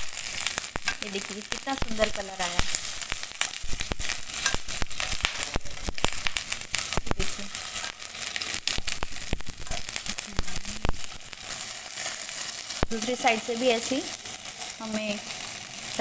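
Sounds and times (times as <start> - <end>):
oil sizzling and popping: 0.0 - 16.0.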